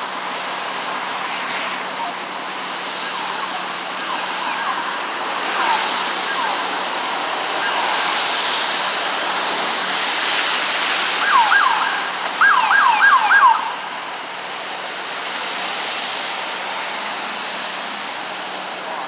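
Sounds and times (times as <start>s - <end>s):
road traffic noise: 0.0s - 19.0s
siren whoops: 3.0s - 9.2s, 11.1s - 14.1s.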